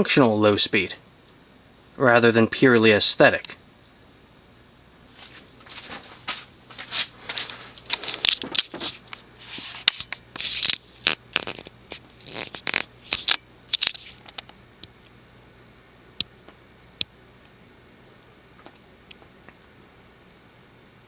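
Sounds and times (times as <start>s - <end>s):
faint low hum: 0.0s - 21.0s
rustling and scraping: 5.1s - 14.4s.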